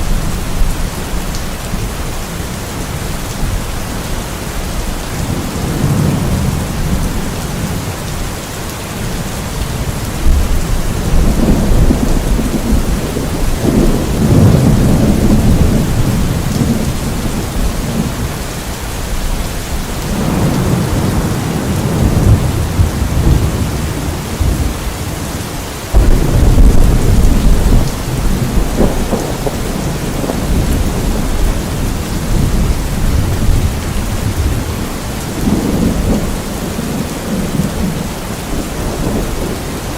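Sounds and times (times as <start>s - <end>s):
steady rain: 0.0s - 39.9s
low rolling thunder: 4.8s - 8.3s, 9.0s - 39.9s
loud thunderclap: 5.2s - 7.8s, 10.2s - 18.2s, 20.0s - 24.8s, 25.9s - 39.6s.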